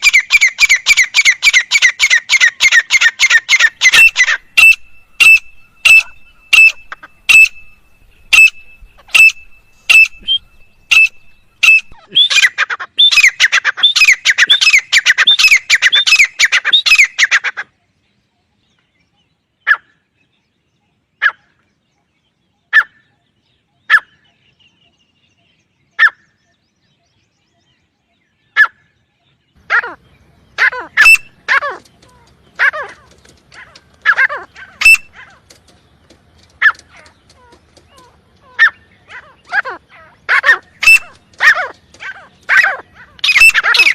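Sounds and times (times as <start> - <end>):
bird calling sharply: 0.0 - 17.7, 29.6 - 35.6, 36.6 - 43.9.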